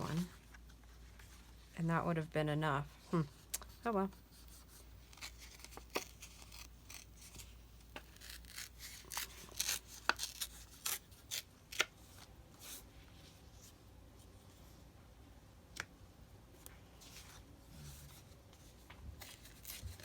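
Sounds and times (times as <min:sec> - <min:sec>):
paper rustling: 0:17.0 - 0:20.0.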